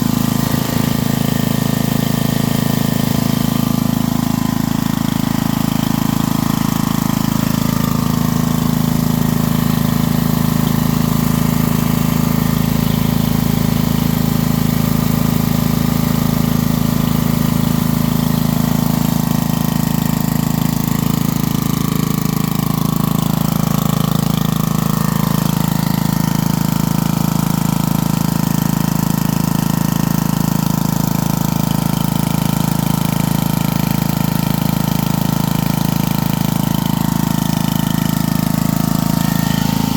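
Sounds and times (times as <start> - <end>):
portable generator running: 0.0 - 39.9.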